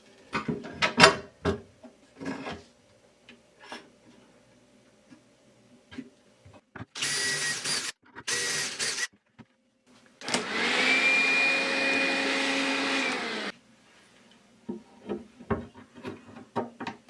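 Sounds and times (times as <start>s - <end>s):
whirring machine whine: 7.0s - 9.1s, 10.4s - 13.5s.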